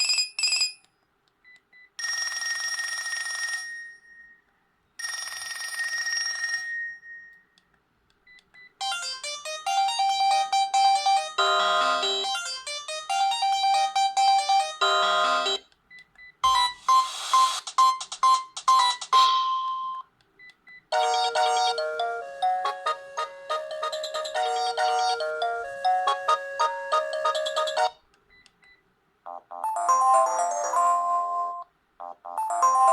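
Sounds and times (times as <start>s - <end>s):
phone bell ringtone: 2.0s - 4.4s, 5.0s - 7.6s, 8.8s - 15.6s, 21.0s - 28.0s, 29.3s - 32.9s
melodic phone ringtones: 8.8s - 15.6s, 16.4s - 20.0s, 20.9s - 28.0s, 29.3s - 32.9s.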